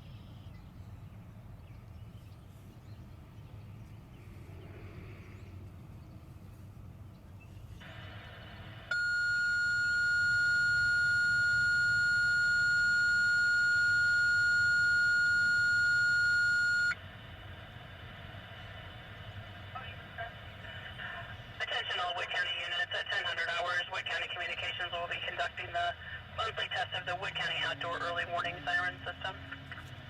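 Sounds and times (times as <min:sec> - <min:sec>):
radio alert tone: 0:08.9 - 0:17.0
radio static hiss: 0:17.7 - 0:30.0.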